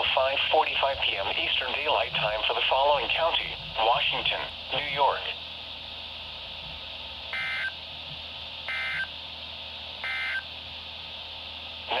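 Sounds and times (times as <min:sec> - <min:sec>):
radio hiss: 0:00.0 - 0:05.4
digital data tone bursts: 0:07.4 - 0:07.8, 0:08.7 - 0:09.1, 0:10.0 - 0:10.4.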